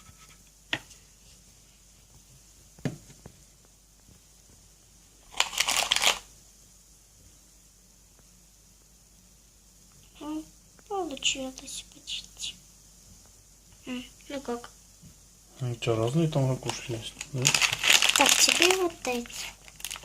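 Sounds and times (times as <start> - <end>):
crinkling rustle: 5.3 - 6.3, 16.5 - 20.0.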